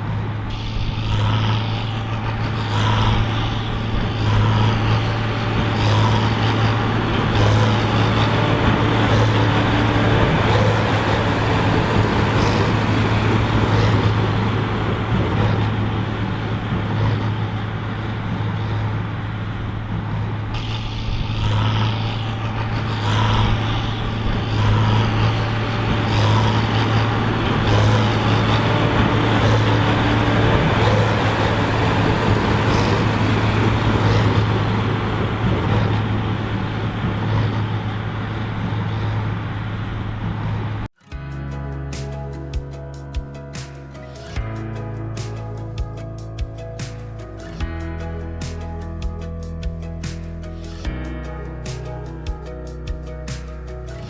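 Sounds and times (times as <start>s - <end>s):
tractor diesel engine under load: 0.0s - 54.0s
baler regular beat: 41.1s - 54.0s.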